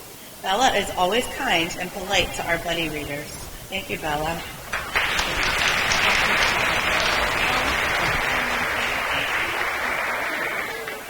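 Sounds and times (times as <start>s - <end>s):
children applauding: 4.4s - 11.0s.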